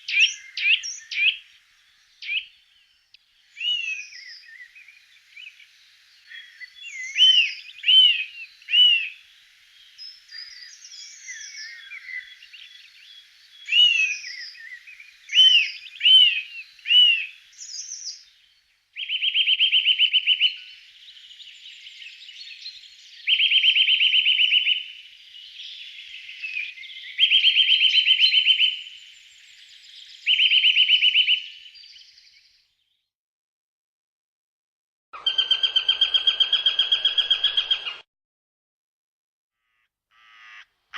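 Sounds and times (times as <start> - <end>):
faint bird twittering: 0.0 - 33.0
loud rapid bird trills: 35.2 - 38.0, 39.6 - 40.7.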